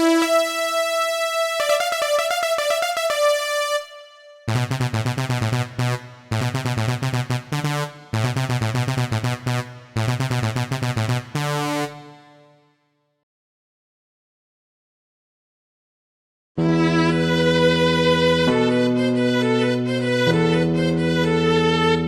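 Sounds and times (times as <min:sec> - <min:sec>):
synthesizer melody: 0:00.0 - 0:12.6.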